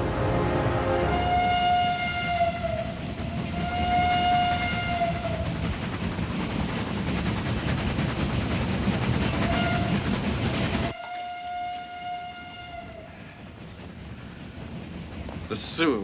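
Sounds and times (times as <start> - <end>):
steam locomotive whistle: 0.0 - 5.3, 9.5 - 9.9, 10.9 - 13.0
moving train rumble: 0.0 - 16.0.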